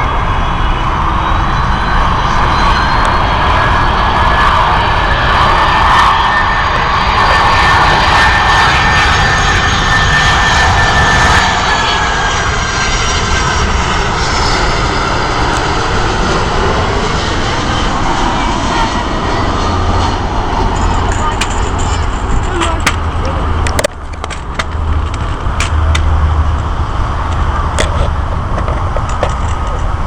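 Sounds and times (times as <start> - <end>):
jet airliner passing close by: 0.0 - 30.0.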